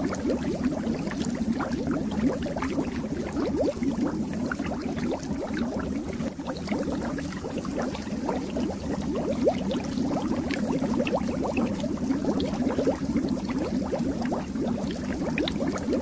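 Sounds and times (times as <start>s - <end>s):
fish tank water bubbling: 0.0s - 16.0s.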